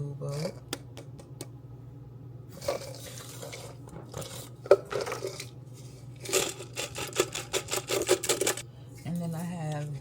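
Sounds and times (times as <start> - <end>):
low steady hum: 0.0 - 10.0
spice shaker rattling: 6.2 - 8.6.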